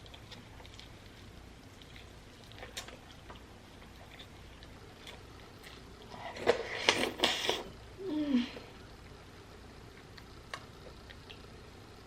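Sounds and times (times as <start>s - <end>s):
loud smacking chewing: 0.0s - 7.7s.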